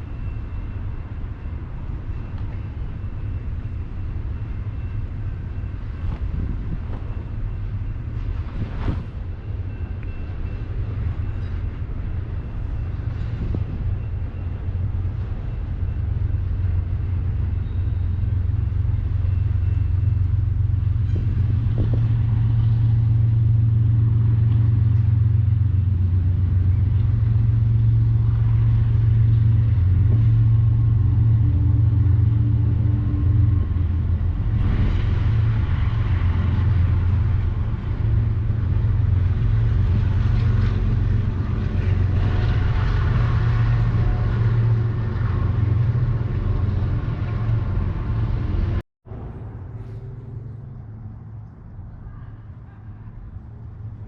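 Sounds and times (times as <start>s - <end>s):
train rattle and clatter: 0.0s - 51.4s
train rumbling past: 0.0s - 54.0s.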